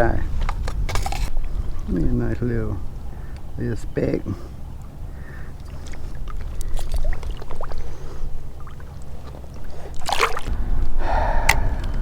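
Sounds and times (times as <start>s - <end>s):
steady low rumble: 0.0s - 9.2s, 10.5s - 12.0s
water sloshing and splashing: 4.9s - 10.6s.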